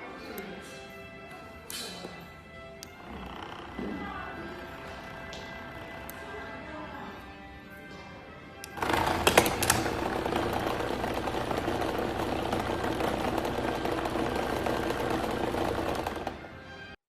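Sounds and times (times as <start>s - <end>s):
mechanical rumbling and rattling: 8.7s - 16.4s.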